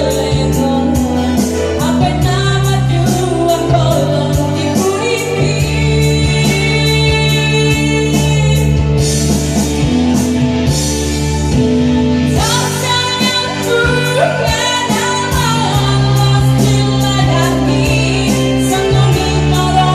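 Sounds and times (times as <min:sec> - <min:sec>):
held instrumental chords with beat: 0:00.0 - 0:19.9.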